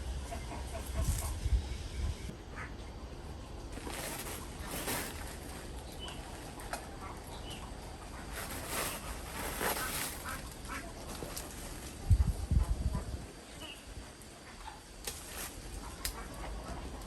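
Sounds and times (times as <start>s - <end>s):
ducks quacking: 3.8s - 12.0s.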